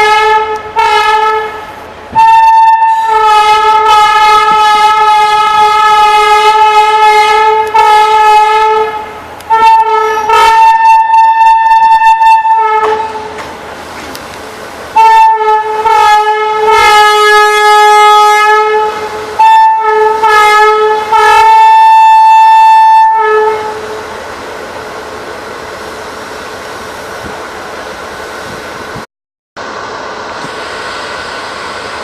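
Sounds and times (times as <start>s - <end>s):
locomotive air horn blasts: 0.0s - 13.4s, 15.0s - 24.0s.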